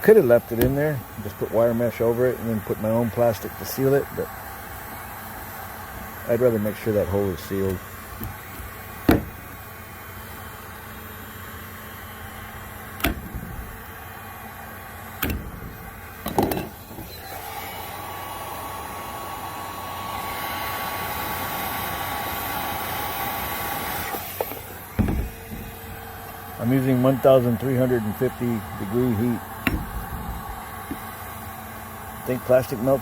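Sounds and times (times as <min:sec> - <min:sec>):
heat gun blowing: 0:04.9 - 0:19.4, 0:27.3 - 0:32.2
sharp knocks and clicks: 0:08.2 - 0:09.5, 0:13.0 - 0:13.9, 0:15.2 - 0:17.1, 0:24.4 - 0:26.0, 0:29.6 - 0:31.1.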